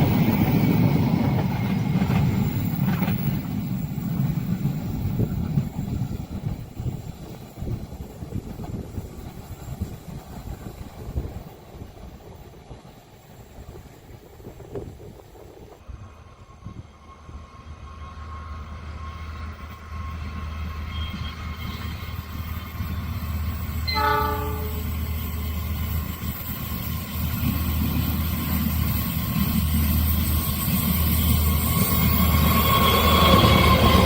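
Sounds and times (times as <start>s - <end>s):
train rumble: 0.0s - 34.0s
wheel and rail noise: 0.0s - 34.0s
train horn blast: 23.8s - 25.1s.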